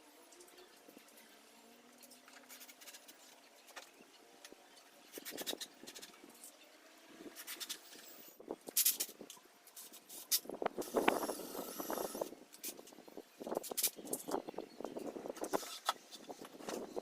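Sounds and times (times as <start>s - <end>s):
scratching and scraping: 2.0s - 4.0s, 5.1s - 6.6s, 7.2s - 12.9s, 15.3s - 17.0s.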